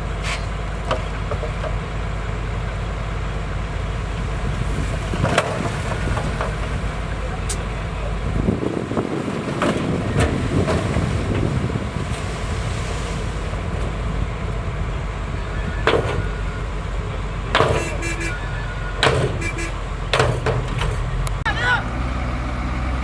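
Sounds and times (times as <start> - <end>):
diesel earthmoving machine rumbling: 0.0 - 23.0
sharp metallic clanks: 17.5 - 21.4.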